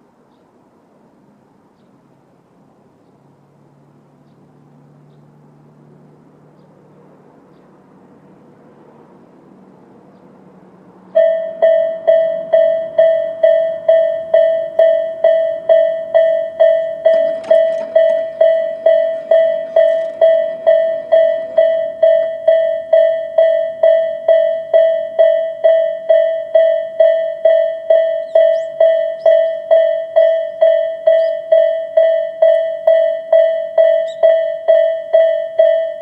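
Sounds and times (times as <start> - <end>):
level-crossing bell ringing: 11.2 - 36.0.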